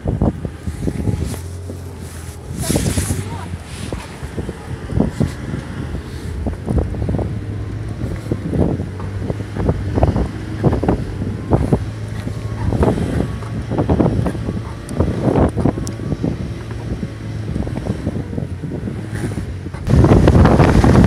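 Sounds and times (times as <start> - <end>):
vehicle engine drone: 0.0 - 21.0.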